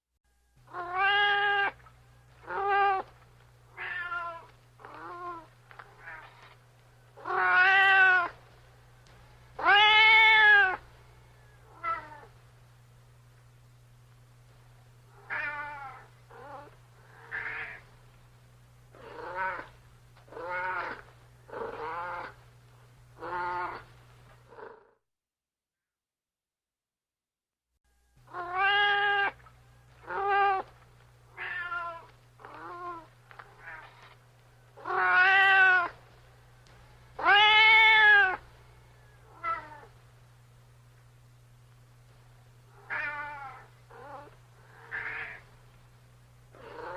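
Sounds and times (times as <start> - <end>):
steady low hum: 0.2 - 24.9, 27.9 - 46.9
cat meowing: 0.7 - 1.8, 3.7 - 6.5, 7.2 - 8.4, 9.6 - 10.8, 15.2 - 17.8, 19.0 - 19.7, 20.3 - 21.0, 23.2 - 23.8, 28.3 - 29.4, 30.0 - 30.7, 31.3 - 34.0, 34.8 - 36.0, 37.2 - 38.4, 39.3 - 39.9, 42.8 - 45.4.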